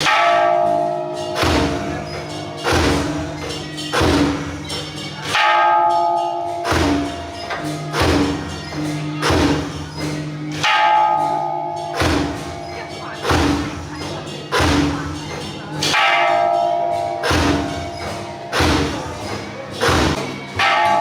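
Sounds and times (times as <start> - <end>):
ringing bell-like chimes: 0.0 - 21.0
deep drum hits: 11.2 - 15.2, 16.2 - 21.0.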